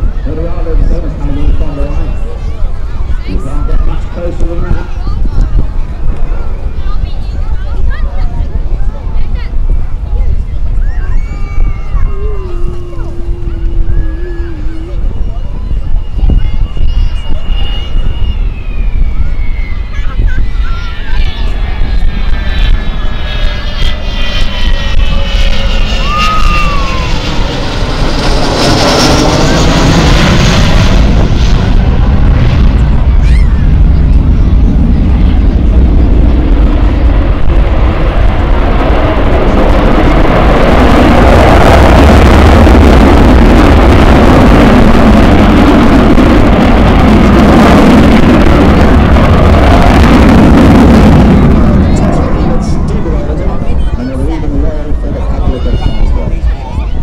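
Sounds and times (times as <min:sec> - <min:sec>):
jet engines roaring overhead: 0:00.0 - 0:57.0.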